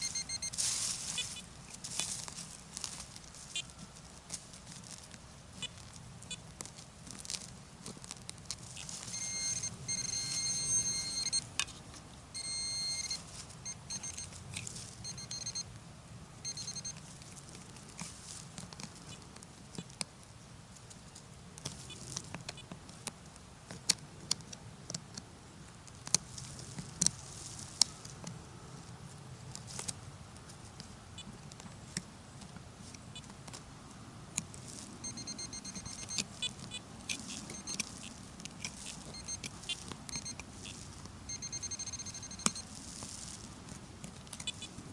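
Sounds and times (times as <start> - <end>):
metal detector high-pitched tone: 0.0 - 1.5, 9.1 - 11.5, 12.4 - 14.4, 15.0 - 15.7, 16.4 - 17.0, 35.0 - 38.1, 38.7 - 42.7
sharp clicks and crackles: 34.4 - 44.8.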